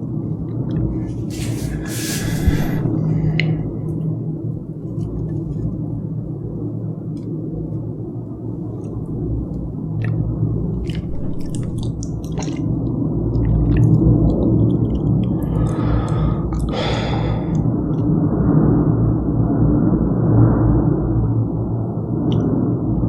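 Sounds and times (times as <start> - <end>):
wet mouth clicks: 0.7 - 3.5, 10.8 - 12.8, 13.4 - 16.9
chewing soft food: 10.0 - 17.0.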